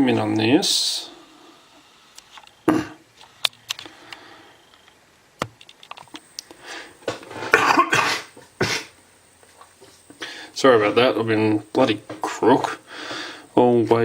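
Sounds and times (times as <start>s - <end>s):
man coughing: 2.7s - 3.0s, 7.5s - 9.0s.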